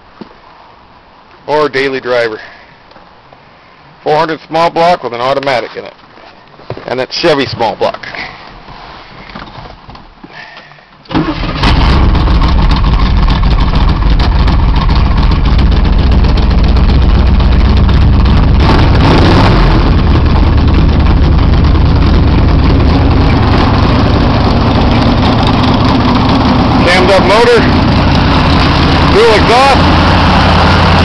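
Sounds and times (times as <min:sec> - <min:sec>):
vee eight engine starting and running: 0:11.1 - 0:31.0.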